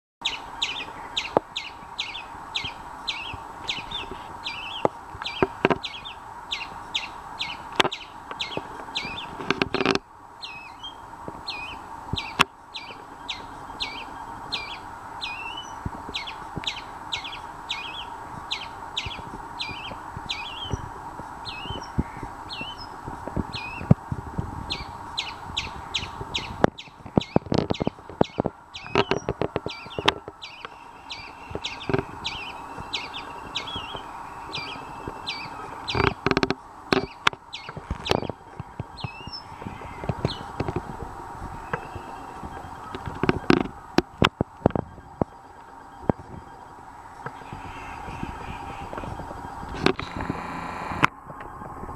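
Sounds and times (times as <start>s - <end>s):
squirrel chirping: 0.2s - 24.0s, 24.7s - 51.1s
low hum: 0.2s - 51.9s.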